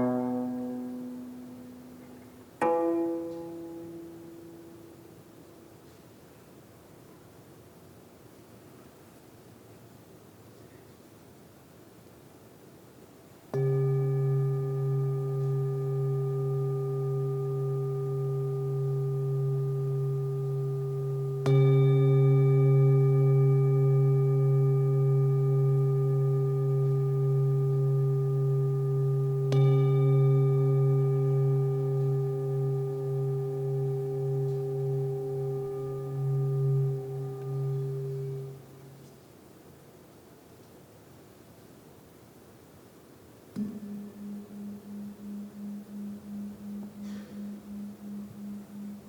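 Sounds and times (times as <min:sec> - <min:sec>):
singing bowl ringing: 0:13.5 - 0:39.0, 0:43.6 - 0:49.0.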